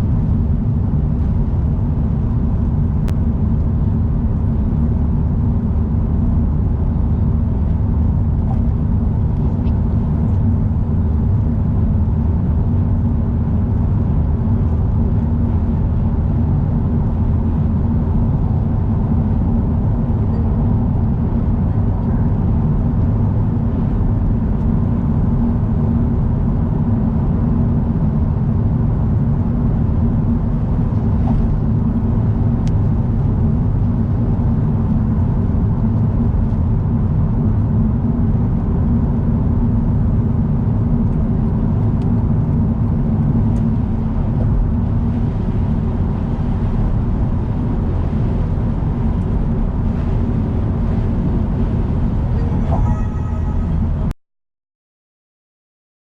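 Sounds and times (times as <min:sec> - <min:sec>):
car driving at speed: 0:00.0 - 0:54.1.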